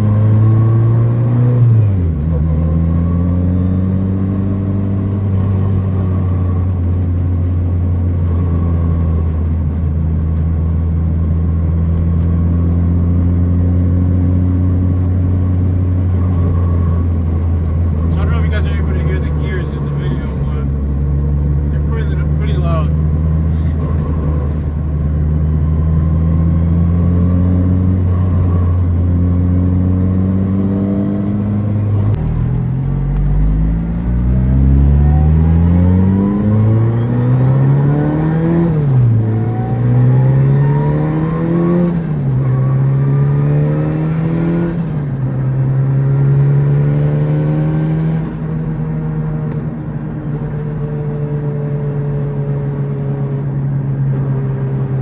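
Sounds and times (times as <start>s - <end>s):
car engine accelerating hard: 0.0s - 55.0s
turbo whine: 30.4s - 50.8s.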